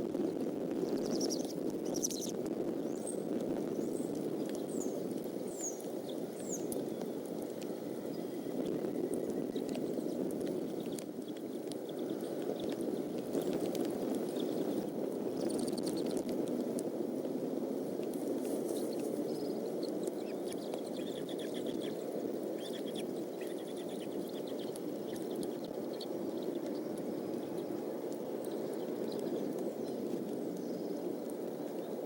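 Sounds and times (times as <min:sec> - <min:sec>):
steady rain: 0:00.0 - 0:32.0
raindrops ticking: 0:00.8 - 0:07.8, 0:08.6 - 0:16.9.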